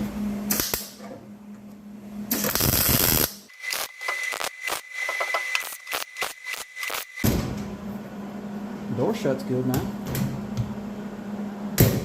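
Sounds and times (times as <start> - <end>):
welding arc crackle: 2.3 - 7.2.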